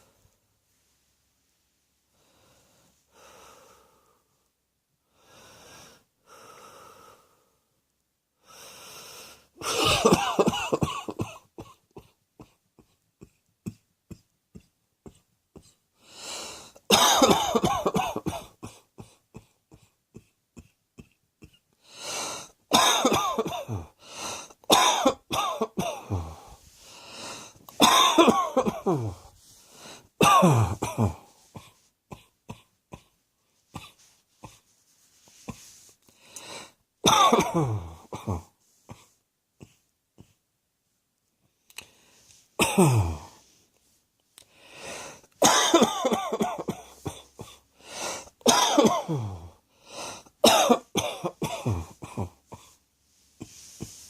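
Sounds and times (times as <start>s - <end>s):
quiet breaths: 0.0s - 9.9s, 11.2s - 16.9s, 18.3s - 22.7s, 23.5s - 24.7s, 25.8s - 27.8s, 28.7s - 37.0s, 37.7s - 45.4s, 46.7s - 48.4s, 49.1s - 50.4s, 51.4s - 54.0s
person coughing: 9.6s - 15.8s, 16.9s - 21.6s, 22.7s - 24.0s, 24.7s - 26.6s, 27.3s - 29.3s, 30.2s - 33.2s, 37.0s - 40.4s, 42.6s - 43.4s, 45.4s - 52.8s.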